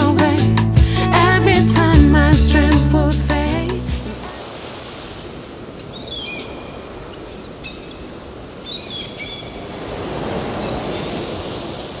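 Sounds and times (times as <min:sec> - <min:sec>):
sea waves washing on shore: 0:04.0 - 0:12.0
bird whistling calls: 0:05.8 - 0:08.0, 0:08.6 - 0:09.9, 0:10.6 - 0:11.1.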